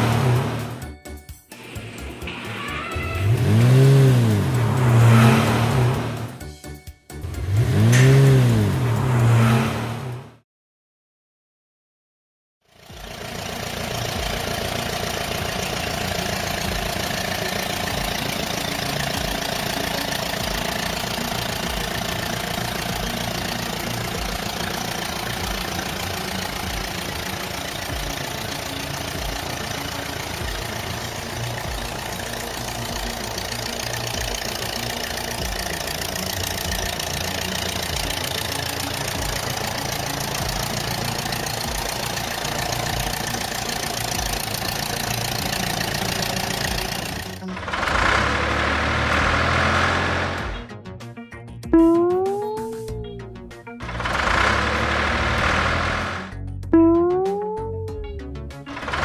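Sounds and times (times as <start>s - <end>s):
engine idling with low knock: 12.7s - 50.6s, 53.8s - 57.0s.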